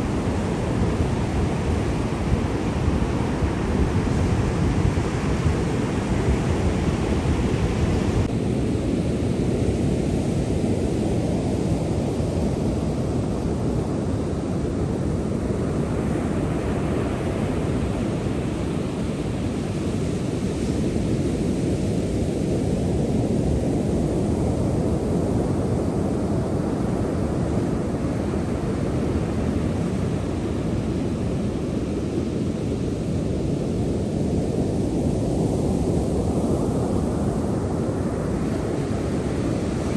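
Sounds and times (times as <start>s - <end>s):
ocean waves rushing: 35.2s - 39.9s.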